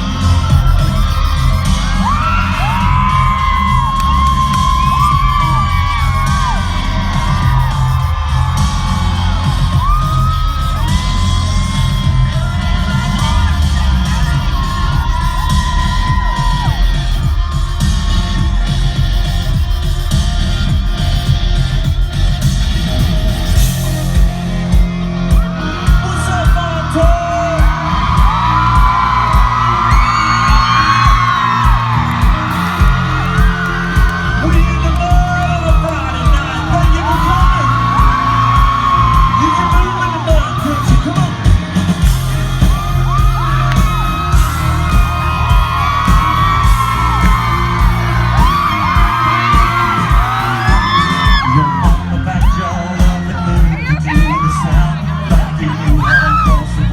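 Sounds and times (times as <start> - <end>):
crowd yelling and whooping: 0.0 - 56.9
live country band playing: 0.0 - 56.9
person singing: 24.1 - 41.8, 42.8 - 56.9.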